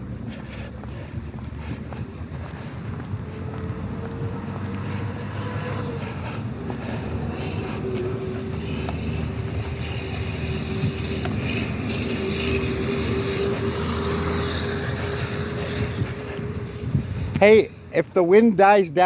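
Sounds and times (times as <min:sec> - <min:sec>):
car engine and road rumble: 0:00.0 - 0:19.0
steady humming tone: 0:04.9 - 0:17.9.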